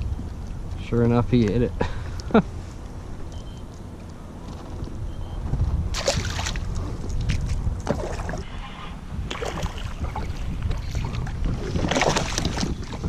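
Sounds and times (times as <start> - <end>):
wind rumbling on microphone: 0.0 - 13.0
fish splashing water: 5.9 - 8.4, 9.3 - 13.0.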